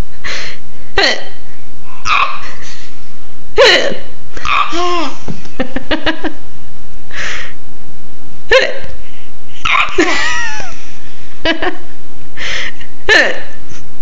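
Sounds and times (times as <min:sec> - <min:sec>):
child hiccuping: 0:03.6 - 0:05.2.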